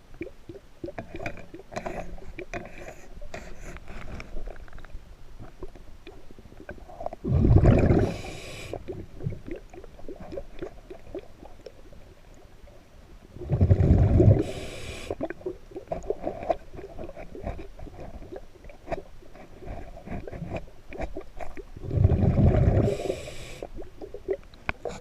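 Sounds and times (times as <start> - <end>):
faint underwater crackling: 0.0 - 25.0
rush of exhaled bubbles: 6.8 - 11.3, 13.3 - 18.4, 21.8 - 24.4
diver breathing through regulator: 7.3 - 8.8, 13.5 - 15.2, 21.9 - 23.7.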